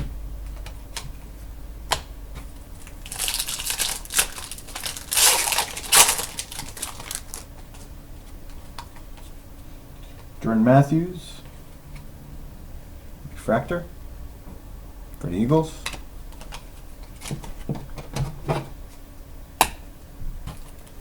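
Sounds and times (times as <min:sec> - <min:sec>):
cards and wrapper crinkling: 0:02.8 - 0:07.5.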